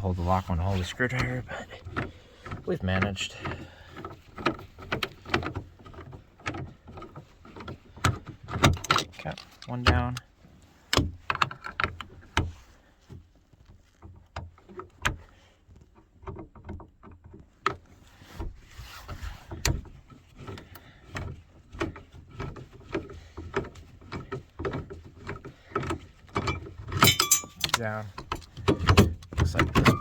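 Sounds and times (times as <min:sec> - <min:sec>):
screwdriver clicks and scrapes on metal: 0:26.4 - 0:30.0.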